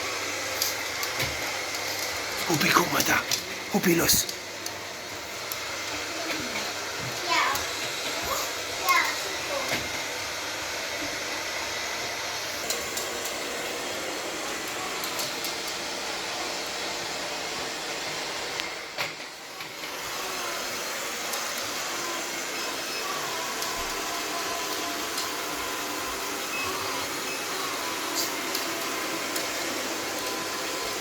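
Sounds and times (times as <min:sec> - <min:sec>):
robot vacuum cleaner running: 0:00.0 - 0:31.0.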